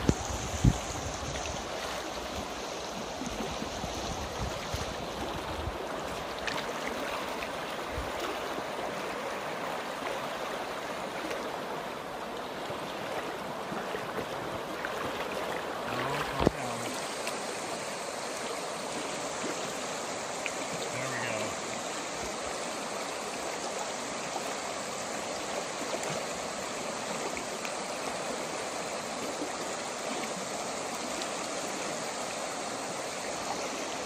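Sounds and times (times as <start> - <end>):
river water flowing: 0.0 - 34.0.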